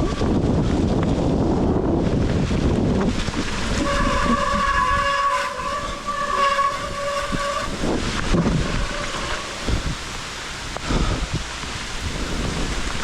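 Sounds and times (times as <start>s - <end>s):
rain: 0.0s - 13.0s
rumble of tyres on trail: 0.0s - 13.0s
bike disc brakes squealing: 3.9s - 7.9s.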